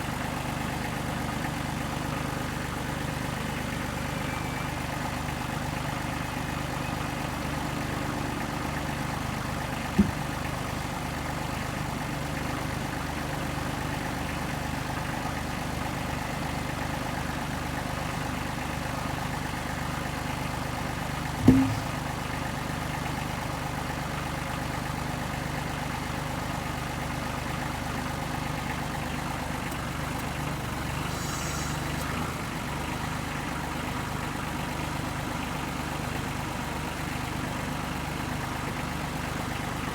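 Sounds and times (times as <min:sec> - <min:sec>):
engine idling: 0:00.0 - 0:39.9
sharp knocks: 0:10.0 - 0:10.2, 0:21.4 - 0:22.0.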